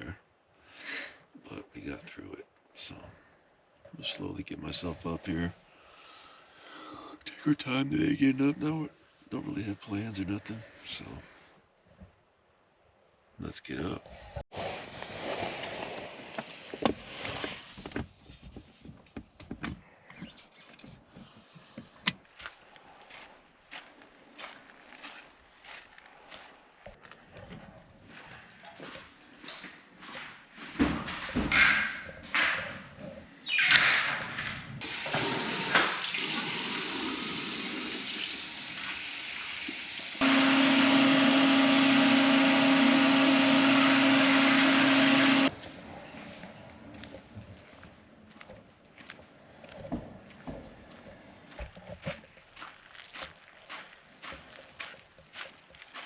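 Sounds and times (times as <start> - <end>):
water rushing: 34.8 - 45.5
small electric motor humming: 40.0 - 45.5.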